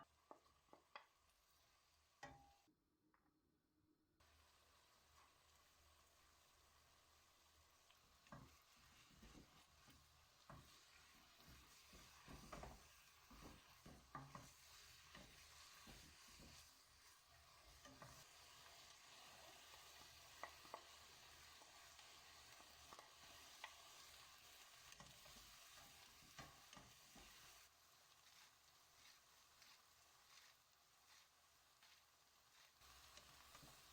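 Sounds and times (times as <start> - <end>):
food sizzling in a frying pan: 0.0 - 2.7, 4.2 - 33.9
utensil clicking against pan: 20.0 - 22.0, 22.8 - 24.1, 24.9 - 27.4.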